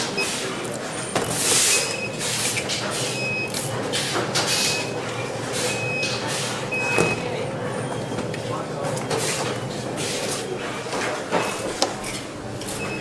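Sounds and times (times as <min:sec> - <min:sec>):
machine hum: 0:11.5 - 0:13.0.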